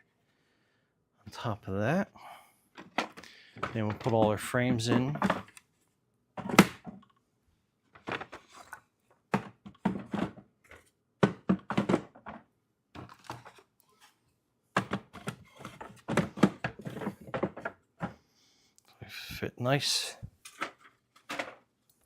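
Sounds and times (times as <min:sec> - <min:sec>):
wooden frames knocking on box: 0:11.2 - 0:12.4.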